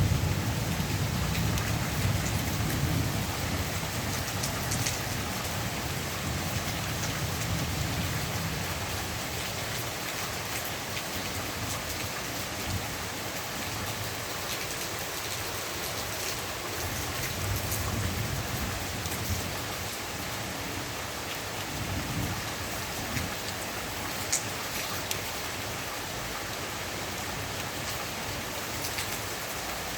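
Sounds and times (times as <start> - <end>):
steady rain hiss: 0.0 - 29.9
raindrops ticking: 0.7 - 5.5, 23.1 - 25.4.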